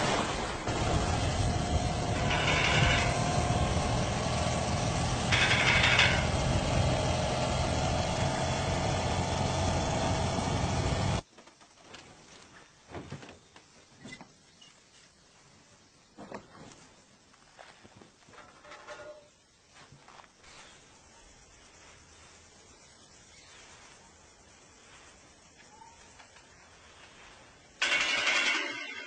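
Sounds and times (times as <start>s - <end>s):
motorcycle engine idling: 0.7s - 11.2s.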